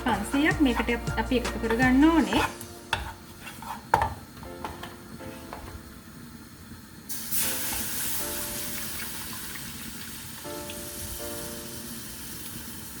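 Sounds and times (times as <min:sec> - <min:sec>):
sauce hissing and sizzling in a pan: 0:05.3 - 0:13.0.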